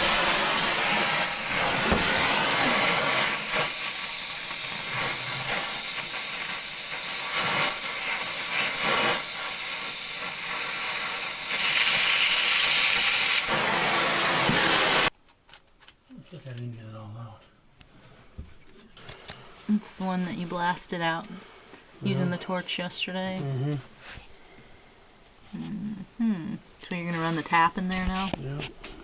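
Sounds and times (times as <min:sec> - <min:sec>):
cutting torch hissing: 0:00.0 - 0:15.1, 0:19.0 - 0:24.8.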